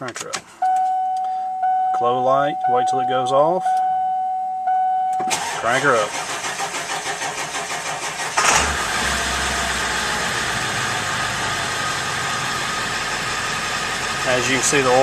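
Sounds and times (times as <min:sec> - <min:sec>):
engine starter cranking: 0:05.2 - 0:09.6
diesel engine idling: 0:05.3 - 0:15.0.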